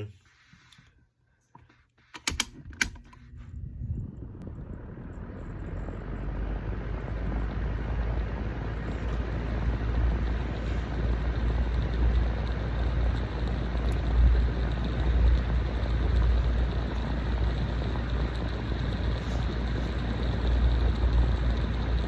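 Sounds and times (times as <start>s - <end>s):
small fan whirring: 0.0s - 22.0s
sharp clicks: 2.1s - 3.2s.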